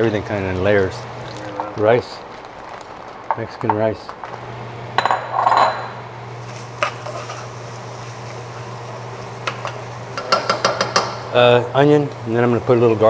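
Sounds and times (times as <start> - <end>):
utensils clinking on cookware: 5.0 - 6.0, 6.8 - 7.5, 9.4 - 11.3.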